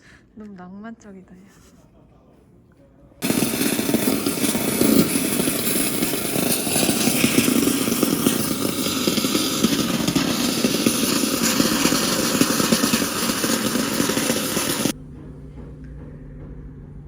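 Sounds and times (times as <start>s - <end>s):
power tool grinding buzz: 3.2s - 15.0s.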